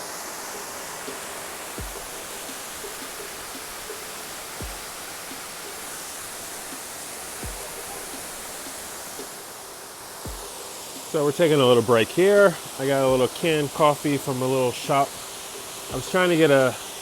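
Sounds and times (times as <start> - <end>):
waterfall rushing: 0.0 - 17.0
low thumps: 1.8 - 4.0, 4.6 - 5.5, 7.4 - 9.4, 10.2 - 10.6.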